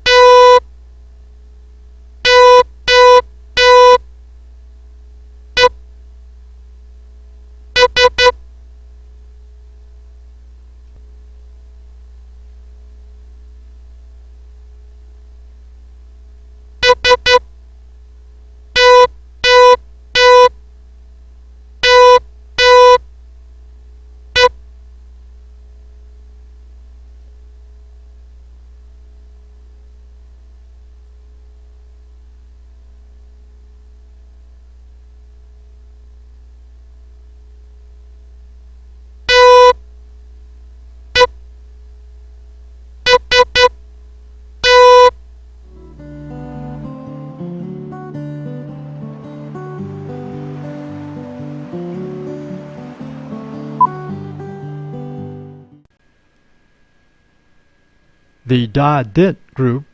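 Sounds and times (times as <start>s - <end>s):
morse code beeps: 0.0s - 0.6s, 2.3s - 4.0s, 7.8s - 8.4s, 16.8s - 17.4s, 18.8s - 20.5s, 21.8s - 23.0s, 39.3s - 39.8s, 43.1s - 43.7s, 44.6s - 45.1s
faint steady hum: 0.0s - 59.9s.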